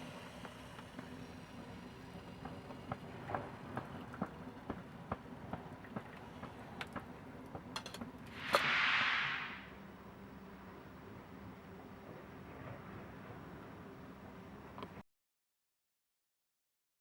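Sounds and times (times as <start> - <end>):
short hiss: 8.3 - 9.8.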